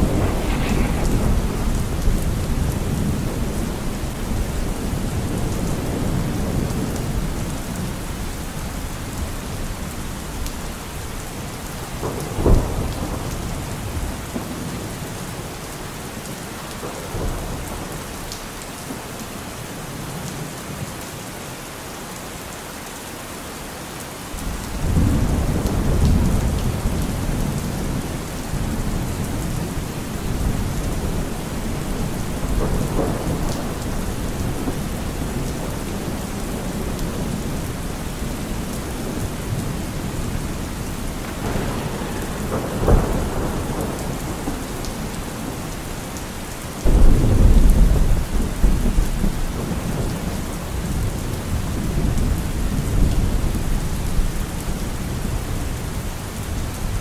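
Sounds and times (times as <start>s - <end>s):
sharp thunder crack: 0.0s - 6.6s, 39.1s - 46.1s
rolling thunder: 0.0s - 10.0s, 11.5s - 15.6s, 24.4s - 55.7s
steady rain: 0.0s - 57.0s.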